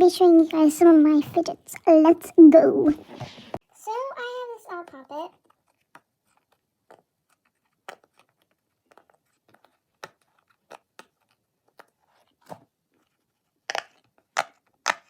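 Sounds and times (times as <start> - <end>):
puppet fidget crinkly crunches: 13.0 - 15.0.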